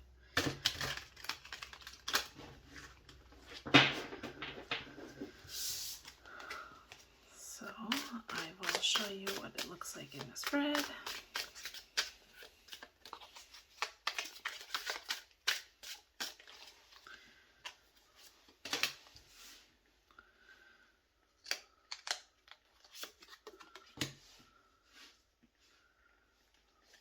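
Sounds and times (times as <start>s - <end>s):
cards snapping and sliding: 0.4s - 3.2s, 10.2s - 16.8s.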